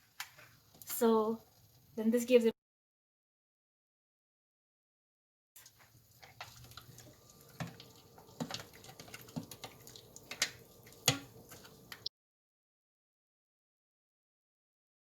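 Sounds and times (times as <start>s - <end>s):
utensils knocking against a pot: 7.5s - 11.8s.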